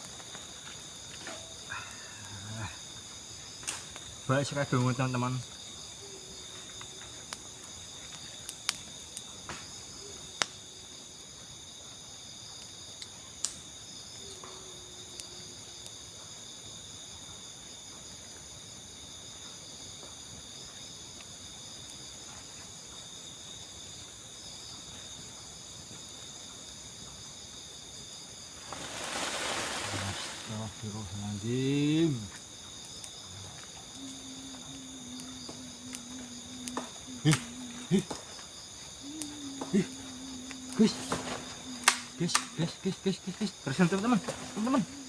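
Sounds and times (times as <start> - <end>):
crickets trilling: 0.0 - 45.0
rustling noise: 28.6 - 30.5.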